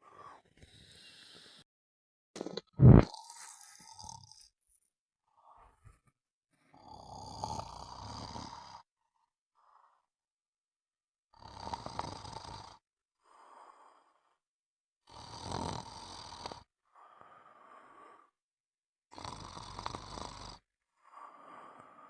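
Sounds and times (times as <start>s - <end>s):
loud snoring: 6.7s - 8.9s, 11.4s - 12.8s, 15.0s - 16.7s, 19.1s - 22.0s.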